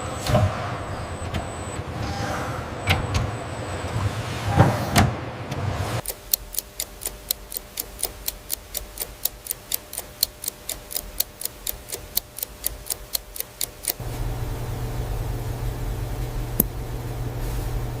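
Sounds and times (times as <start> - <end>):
clock ticking: 6.0 - 14.0.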